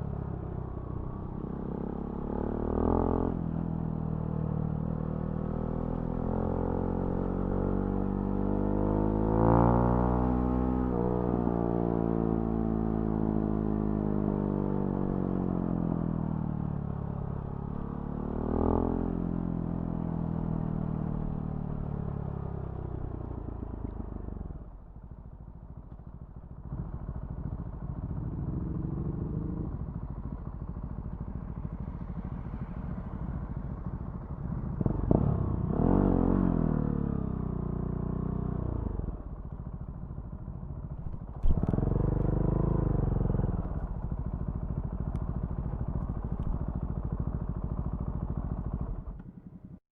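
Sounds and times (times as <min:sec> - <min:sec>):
motorcycle engine revving: 0:28.0 - 0:39.8, 0:40.8 - 0:49.8.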